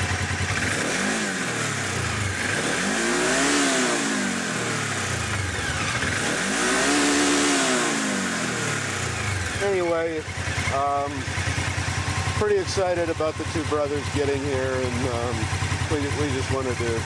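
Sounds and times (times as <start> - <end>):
engine revving: 0.0 - 17.0.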